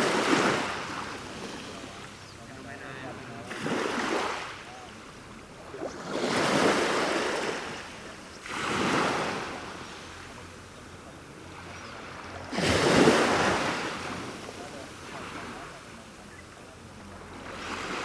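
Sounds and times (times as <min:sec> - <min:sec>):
ocean waves washing up beach: 0:00.0 - 0:18.0.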